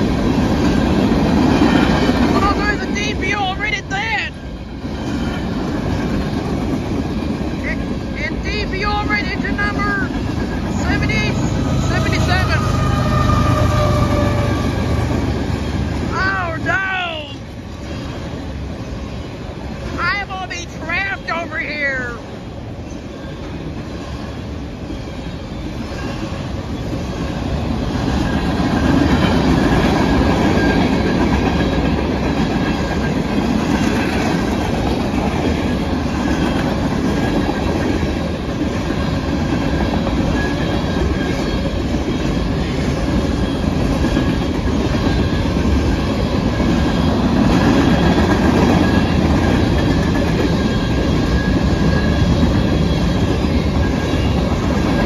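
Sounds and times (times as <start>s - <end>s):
train wheels clattering on rails: 0.0s - 16.2s, 22.1s - 55.0s
steel wheel squeal: 9.8s - 17.2s, 40.2s - 47.2s, 47.8s - 55.0s.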